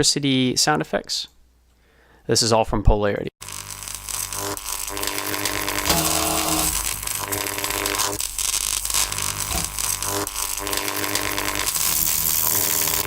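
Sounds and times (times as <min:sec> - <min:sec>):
electric crackle and buzzing hum: 0:03.4 - 0:13.0.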